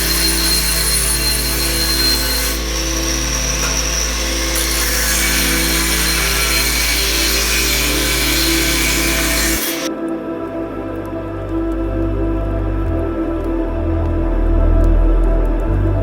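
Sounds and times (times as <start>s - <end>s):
power tool running: 0.0s - 9.9s.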